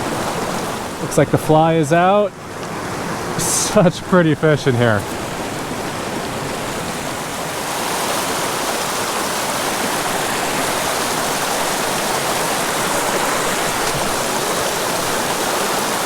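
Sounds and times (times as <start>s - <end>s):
stream water rushing: 0.0s - 16.0s.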